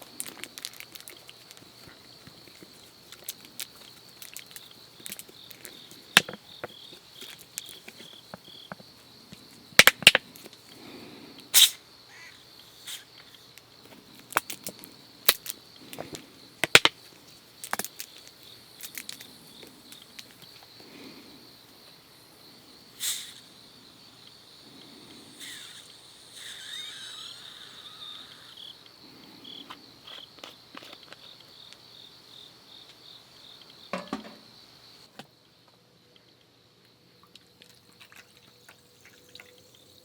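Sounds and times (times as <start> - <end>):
clicks and knocks of objects handled: 0.0 - 8.8, 17.6 - 19.3
crickets chirping: 0.0 - 40.0.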